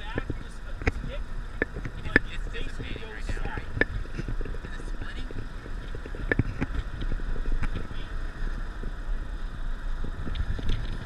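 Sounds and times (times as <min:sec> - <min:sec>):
vehicle road rumble: 0:00.0 - 0:11.0.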